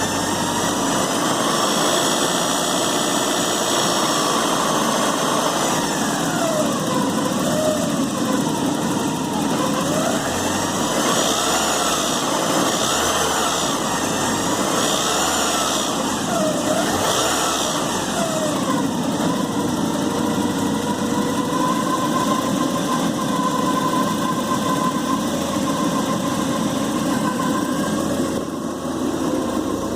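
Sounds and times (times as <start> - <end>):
car engine revving and idling: 0.0 - 29.9
engine rattle: 0.0 - 29.9.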